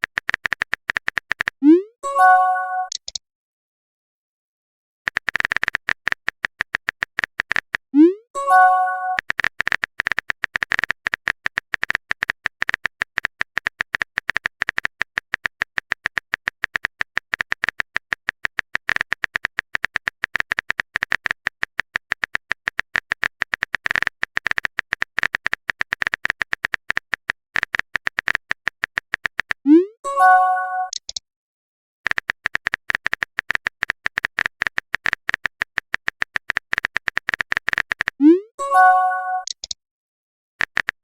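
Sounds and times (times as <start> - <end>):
phone keyboard typing clicks: 0.0 - 1.6, 2.8 - 3.2, 5.1 - 7.9, 8.5 - 29.6, 30.2 - 31.2, 32.1 - 39.8, 40.6 - 41.0
message notification sound: 1.6 - 3.0, 8.0 - 9.2, 29.7 - 31.0, 38.2 - 39.5.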